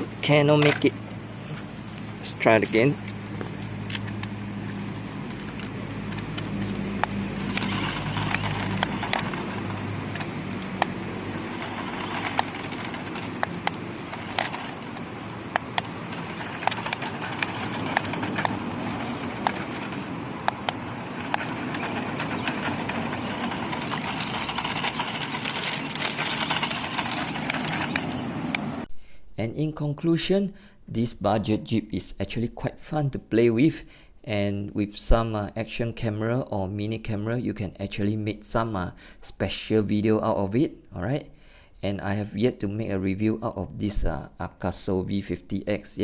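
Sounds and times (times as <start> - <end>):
toy car clicks and knocks: 0.6 - 0.9, 5.6 - 28.6
small electric motor humming: 3.0 - 28.8.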